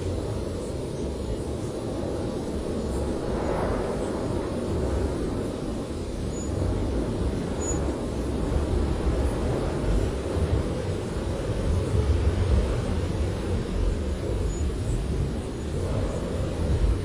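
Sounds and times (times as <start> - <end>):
blizzard wind: 0.0 - 17.0.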